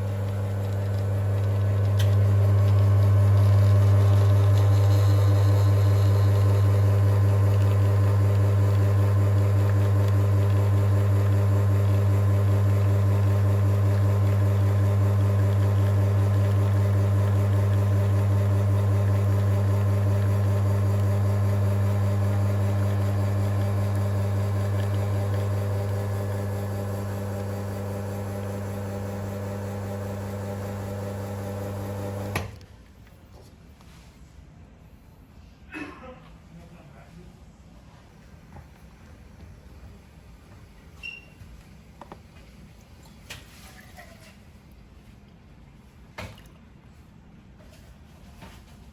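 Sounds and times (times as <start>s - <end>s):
espresso machine pump humming: 0.0s - 32.5s.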